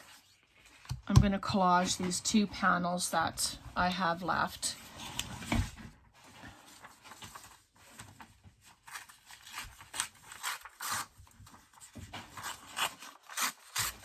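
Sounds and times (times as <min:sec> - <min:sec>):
paper rustling and scraping: 0:04.7 - 0:14.0.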